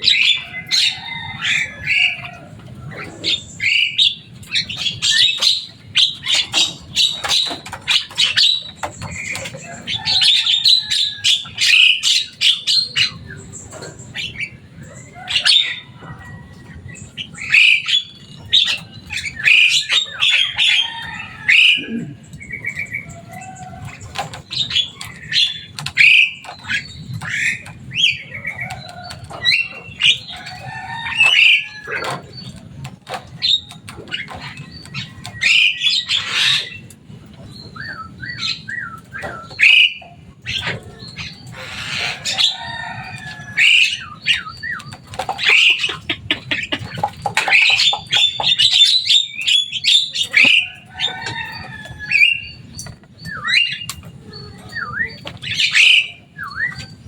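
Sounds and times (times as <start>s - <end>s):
myna bird calling: 0.0s - 57.0s.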